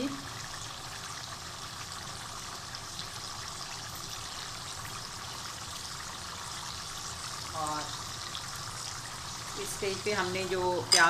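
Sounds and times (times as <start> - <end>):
food sizzling and bubbling in pot: 0.0 - 11.0.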